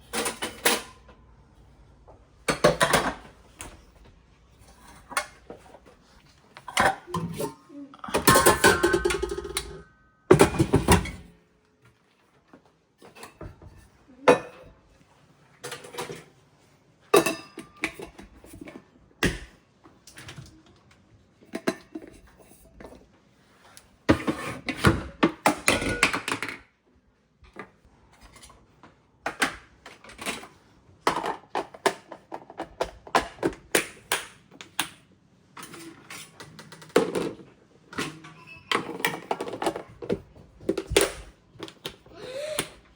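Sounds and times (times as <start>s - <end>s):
objects knocking and clattering: 2.0s - 11.4s, 24.1s - 26.8s, 27.5s - 42.7s.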